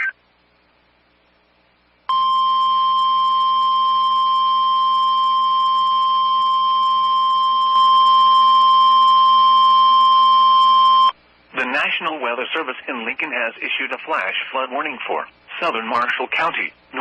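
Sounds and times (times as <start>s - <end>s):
high-pitched alarm tone: 2.1s - 11.1s.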